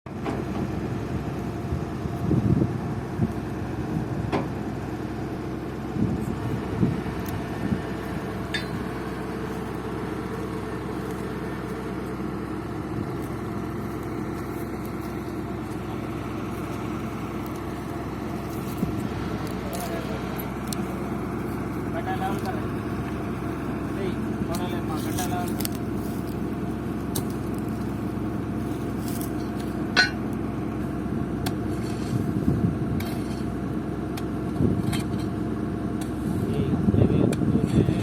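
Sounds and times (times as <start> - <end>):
drilling rig engine running: 0.1 - 38.0
metallic knocks: 8.5 - 9.0.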